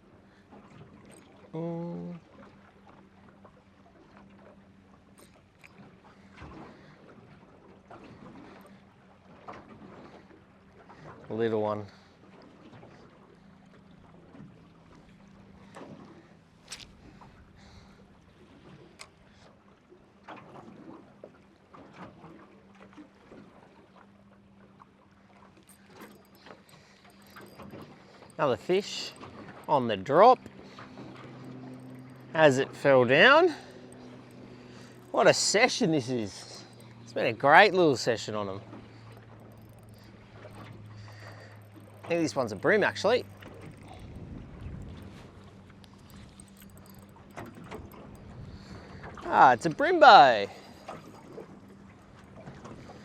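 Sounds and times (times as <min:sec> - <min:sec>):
faint water lapping: 0:00.0 - 0:53.0
knocks and splashes around boat: 0:00.0 - 0:53.0
steady low hum: 0:25.6 - 0:53.0.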